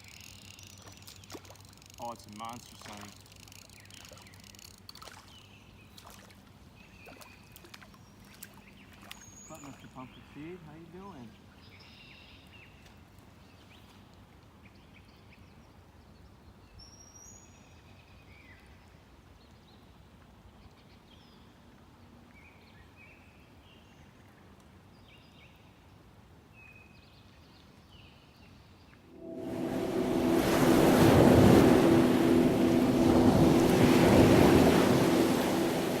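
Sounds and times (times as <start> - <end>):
bird chirps and whistled calls: 9.2 - 10.3.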